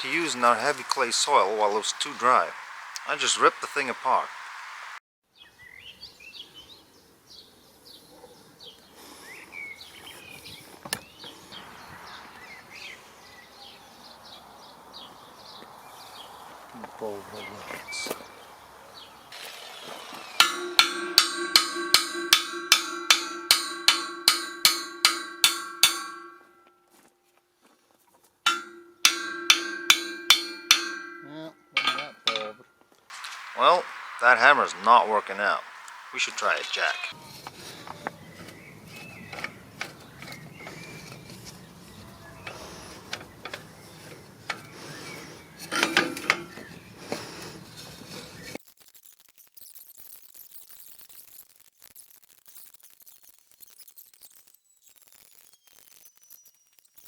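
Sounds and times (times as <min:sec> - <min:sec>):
hammer ringing on steel: 0:20.4 - 0:26.4, 0:28.5 - 0:31.4.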